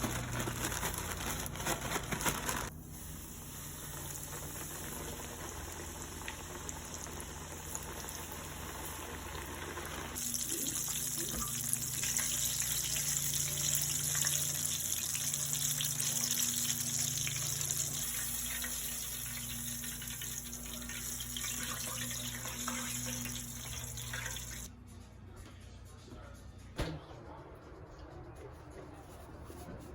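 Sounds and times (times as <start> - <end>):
fish sizzling in hot oil: 2.8 - 24.7.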